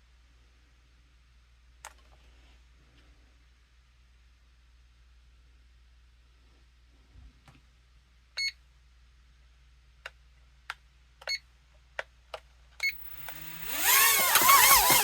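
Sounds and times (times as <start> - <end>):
sharp clicks: 12.9 - 15.0
toy helicopter rotor whine: 12.9 - 15.0.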